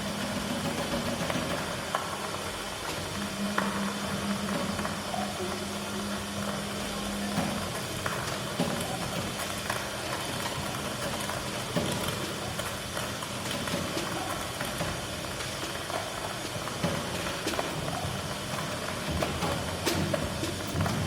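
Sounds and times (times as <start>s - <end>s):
scattered clicks and knocks: 0.1s - 5.2s, 6.0s - 21.0s.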